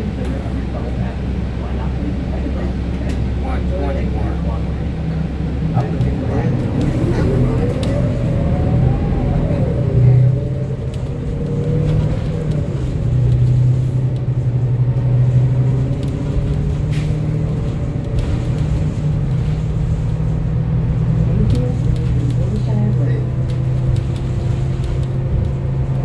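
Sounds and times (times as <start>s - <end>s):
bus engine and road drone: 0.0s - 26.0s
falling whine: 4.9s - 14.8s.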